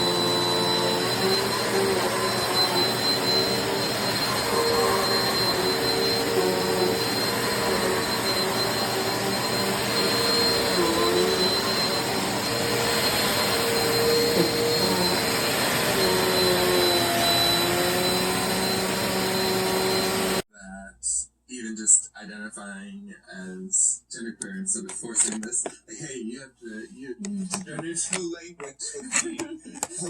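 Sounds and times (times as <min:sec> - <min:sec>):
vacuum cleaner running: 0:00.0 - 0:20.5.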